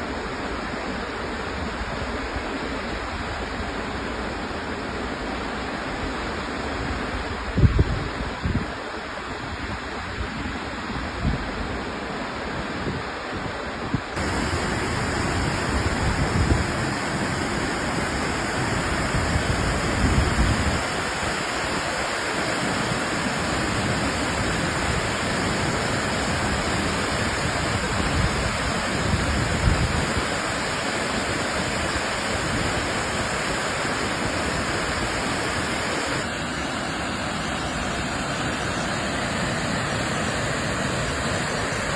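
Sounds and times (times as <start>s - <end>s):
low buffeting on microphone: 12.8s - 21.3s
waterfall rushing: 13.3s - 41.9s.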